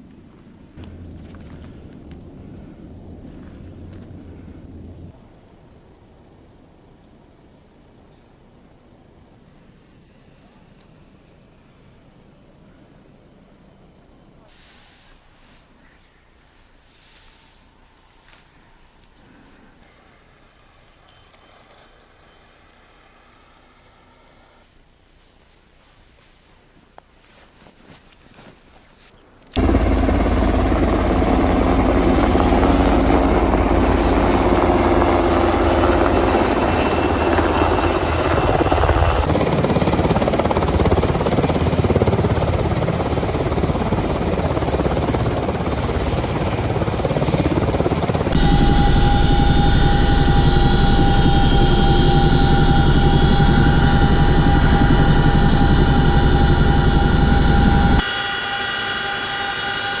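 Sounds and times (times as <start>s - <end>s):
helicopter noise: 0.8s - 5.0s, 29.5s - 60.0s
high whine: 0.8s - 5.2s, 29.5s - 60.0s
low rumble: 0.8s - 5.4s.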